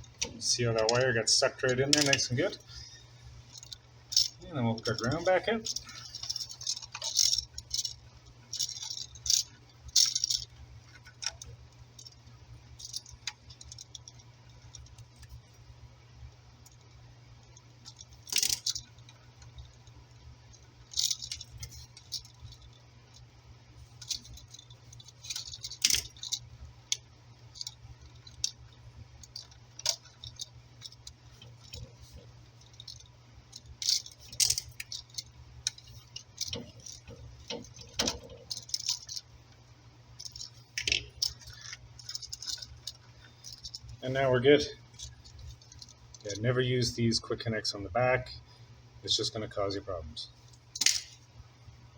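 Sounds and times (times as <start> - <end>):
metallic clicks and rattles: 0.0 - 15.6, 16.6 - 46.4, 50.4 - 51.3.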